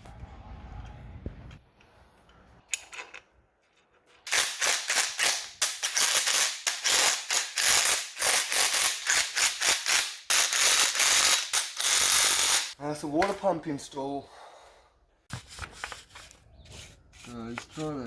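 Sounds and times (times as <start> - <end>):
hand ratchet clicking: 4.3 - 12.8.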